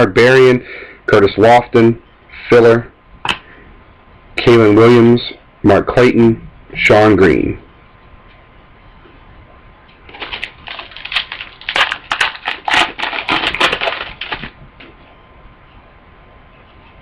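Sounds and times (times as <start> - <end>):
foil pack tearing and crinkling: 10.1 - 14.6.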